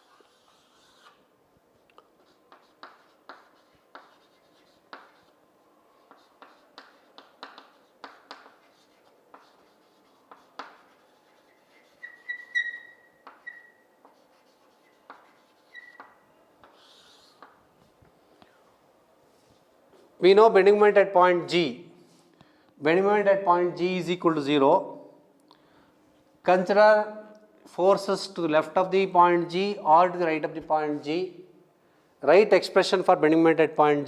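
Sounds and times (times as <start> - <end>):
pen scratching on paper: 0.0 - 1.2, 2.2 - 5.4, 6.0 - 17.6
pen squeaks: 11.4 - 13.9, 15.2 - 17.5.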